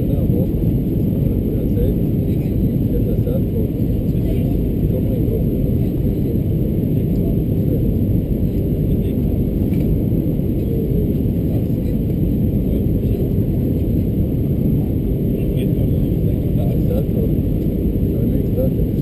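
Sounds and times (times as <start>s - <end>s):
airplane cabin engine rumble: 0.0s - 19.0s.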